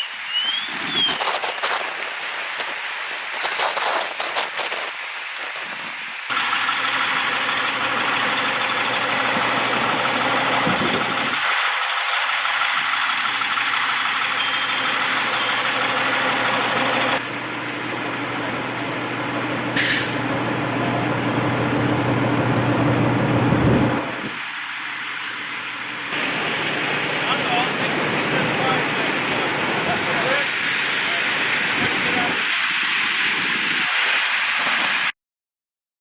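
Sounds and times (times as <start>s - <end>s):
diesel fire truck engine running: 6.3s - 33.8s
short hiss: 19.8s - 20.3s.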